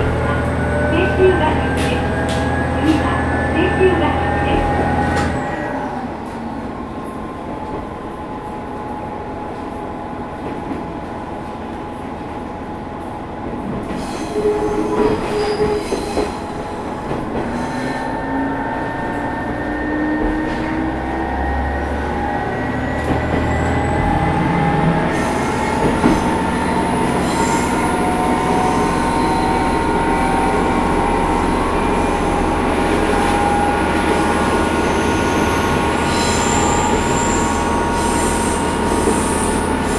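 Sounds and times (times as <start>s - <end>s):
diesel railcar running: 0.0s - 39.9s.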